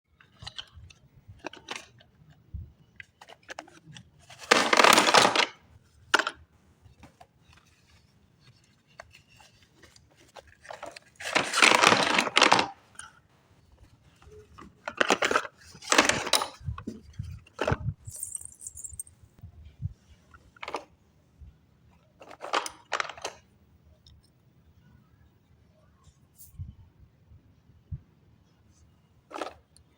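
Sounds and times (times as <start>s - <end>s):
crackling clinking packaging handling: 8.6s - 13.2s, 14.2s - 19.1s, 22.2s - 23.4s.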